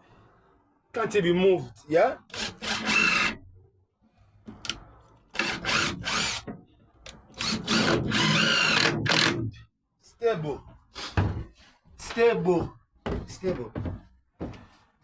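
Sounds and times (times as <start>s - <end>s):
cordless drill driving screws: 2.3s - 3.4s, 5.4s - 6.4s, 7.4s - 9.4s.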